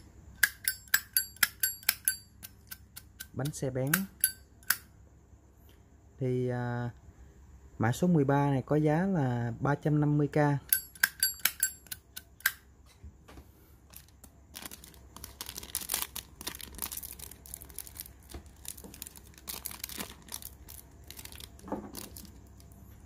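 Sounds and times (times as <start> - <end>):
lighter metallic clinks: 0.4 - 4.9
crinkling and rustling handling: 13.8 - 23.0.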